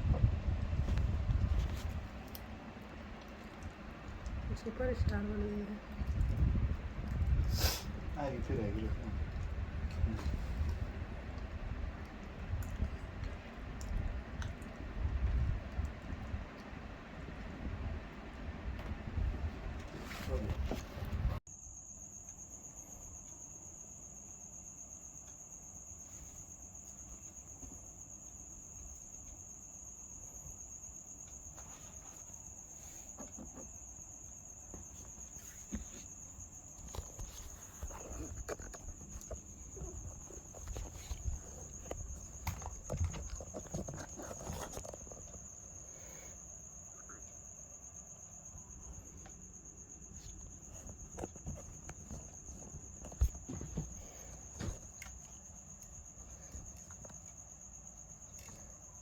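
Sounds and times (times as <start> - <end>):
rustling: 31.3 - 46.2, 49.9 - 57.5.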